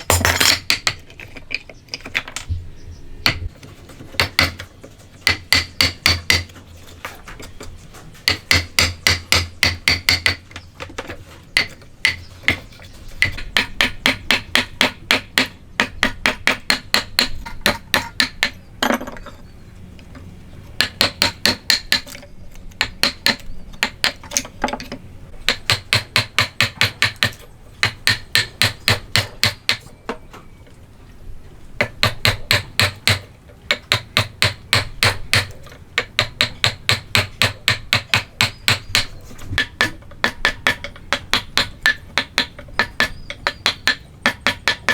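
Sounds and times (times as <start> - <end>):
hammer tapping: 5.2 - 6.5, 8.2 - 10.9, 31.8 - 44.9.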